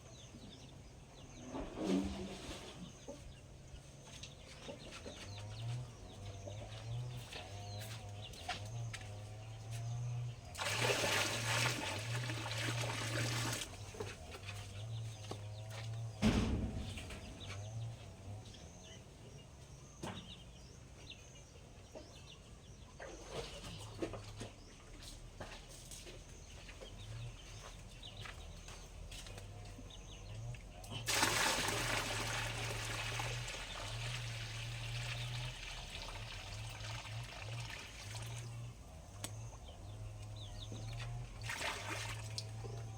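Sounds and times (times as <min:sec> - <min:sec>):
sharp knock: 0:16.2 - 0:17.2.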